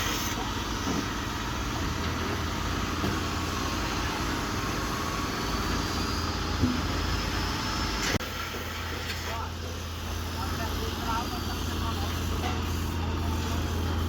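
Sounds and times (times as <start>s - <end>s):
diesel engine running: 0.0s - 8.2s.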